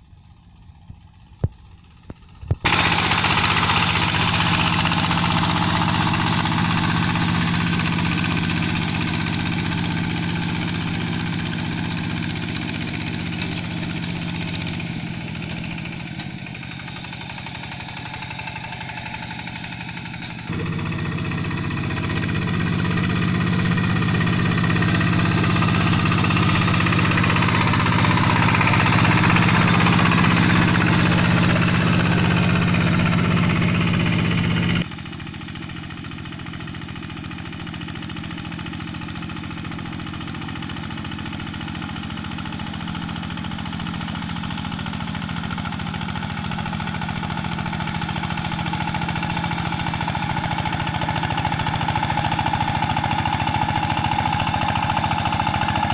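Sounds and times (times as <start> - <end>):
hand tractor diesel engine running: 0.2 - 55.9.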